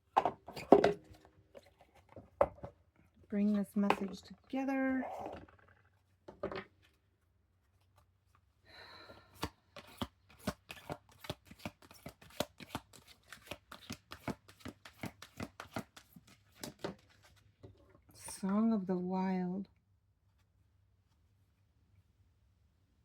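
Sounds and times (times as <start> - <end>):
cards clicking and slapping: 9.2 - 17.4.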